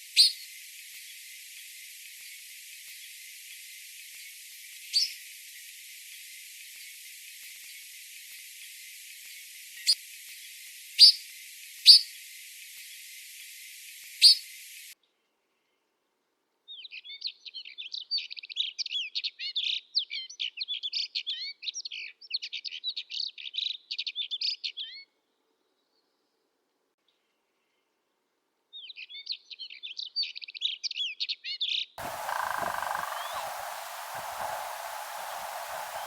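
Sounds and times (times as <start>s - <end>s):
steady hiss: 0.0s - 15.0s, 32.0s - 36.0s
sharp bird calls: 32.0s - 36.0s
songbird twittering: 32.0s - 36.0s.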